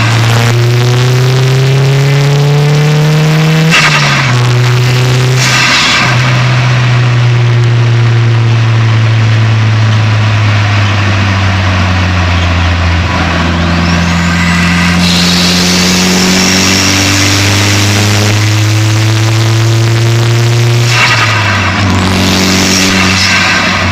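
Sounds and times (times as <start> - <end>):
car engine running under load: 0.0 - 23.9
turbo whistle rising: 10.8 - 23.9.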